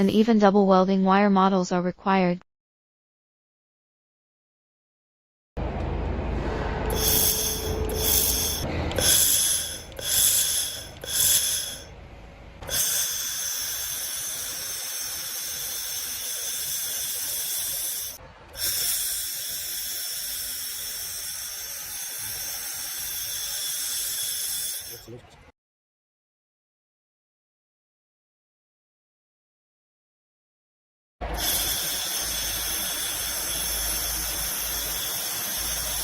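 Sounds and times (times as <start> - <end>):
laser welder hissing: 6.9 - 11.9, 12.6 - 25.2, 31.3 - 36.0.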